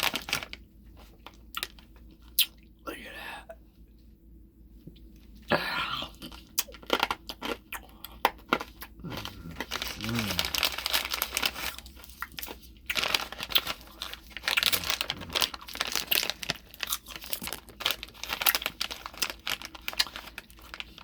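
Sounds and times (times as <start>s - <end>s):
packaging crinkling and rustling: 0.0s - 2.4s, 6.2s - 7.6s, 8.3s - 21.0s.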